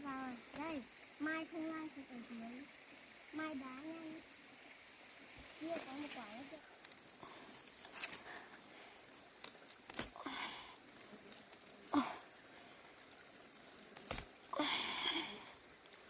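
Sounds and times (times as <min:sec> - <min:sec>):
rustling leafy vines: 0:05.0 - 0:16.0.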